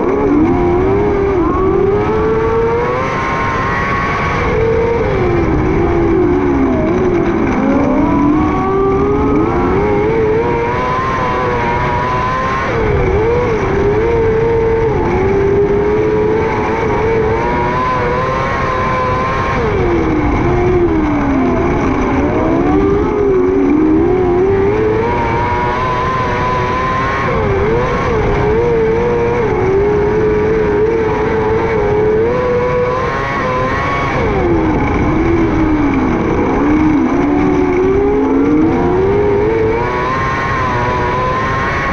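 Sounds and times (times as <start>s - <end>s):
racing car engine: 0.0s - 41.9s.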